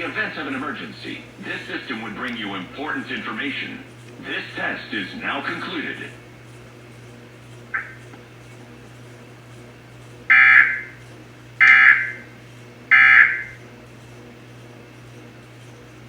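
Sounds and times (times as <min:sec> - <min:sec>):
screechy digital data tones: 0:07.8 - 0:08.0, 0:10.3 - 0:11.0, 0:11.6 - 0:12.3, 0:12.9 - 0:13.6.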